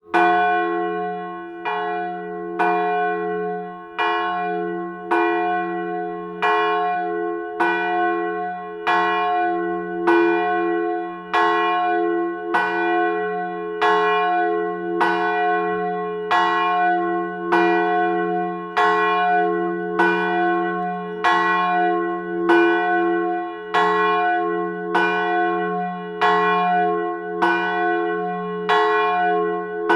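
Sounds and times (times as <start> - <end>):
church bell tolling: 0.0 - 29.9.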